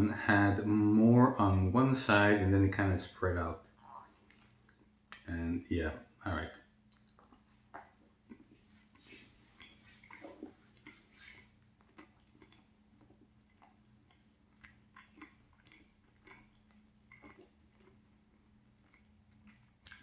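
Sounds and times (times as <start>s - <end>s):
chewing flaky croissant: 6.6s - 20.0s
small mouth clicks: 9.5s - 18.0s, 18.9s - 20.0s.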